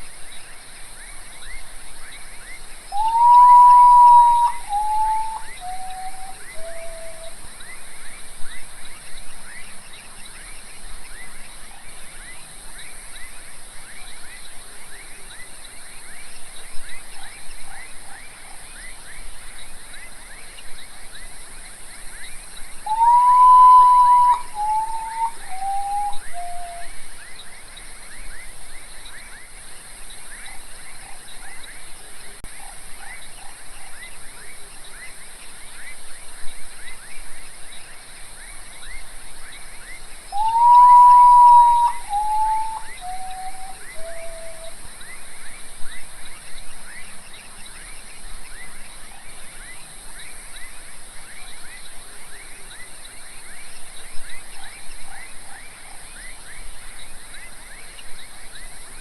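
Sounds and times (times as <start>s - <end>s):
potoo mournful whistling song: 2.9s - 7.4s, 22.8s - 27.0s, 40.3s - 44.8s
chorus of rapid chirps: 40.4s - 44.7s.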